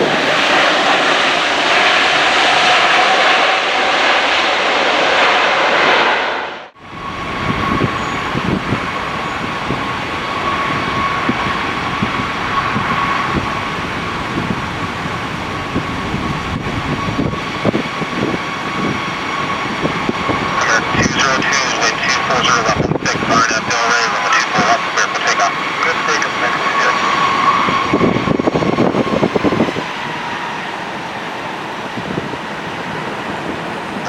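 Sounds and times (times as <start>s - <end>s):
jet engine whine: 0.0s - 34.0s
jet engines roaring: 0.0s - 34.0s
wind buffeting microphone: 6.8s - 23.7s, 27.1s - 34.0s.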